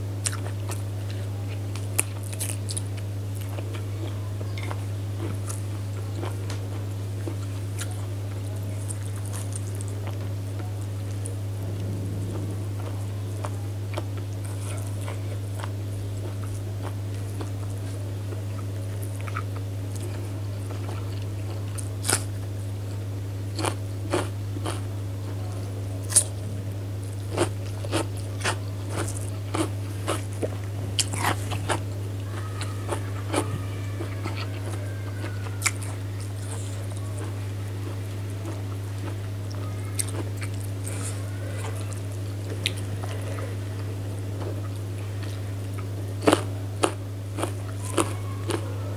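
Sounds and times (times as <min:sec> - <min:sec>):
steady low hum: 0:00.0 - 0:48.9
wet chewing: 0:27.2 - 0:48.7.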